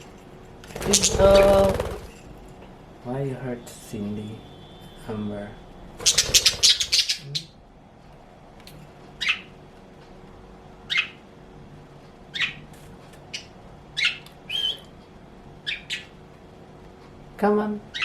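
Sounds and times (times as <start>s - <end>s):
budgerigars squawking and chirping: 0.8s - 2.0s, 6.0s - 7.5s, 9.2s - 9.5s, 10.9s - 11.2s, 12.3s - 12.6s, 13.3s - 14.8s, 15.6s - 16.2s
bird whistle: 14.0s - 14.9s.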